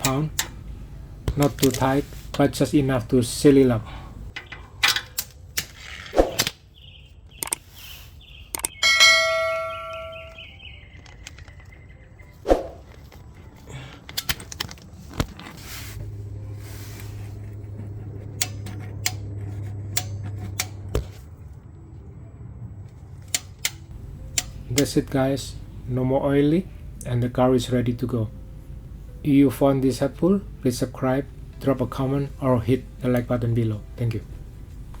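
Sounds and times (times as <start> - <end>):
low steady hum: 0.0 - 4.7, 12.9 - 35.0
tools clicking and knocking: 8.5 - 8.8, 12.9 - 15.4
metal tool clanging: 8.8 - 10.4.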